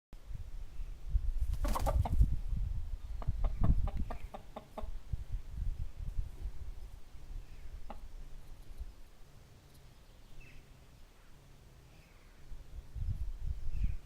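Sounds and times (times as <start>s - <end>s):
chickens clucking: 1.5s - 2.4s, 3.0s - 5.0s, 7.6s - 8.5s.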